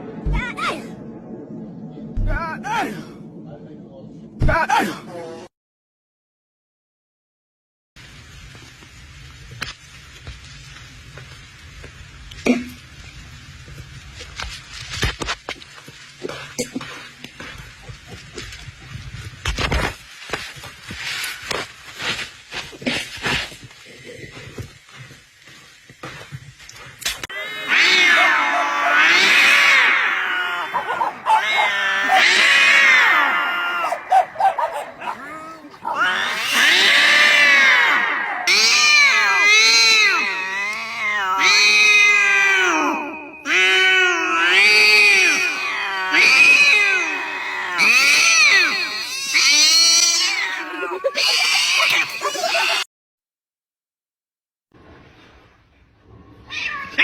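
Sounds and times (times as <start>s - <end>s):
cat yowling: 27.3s - 52.9s, 56.5s - 57.0s.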